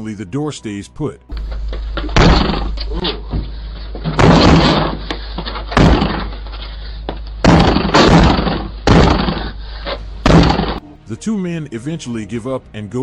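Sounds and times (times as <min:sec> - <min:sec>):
heavy bangs on a door: 0:01.3 - 0:06.5, 0:07.4 - 0:10.8
door rattling: 0:01.3 - 0:10.8.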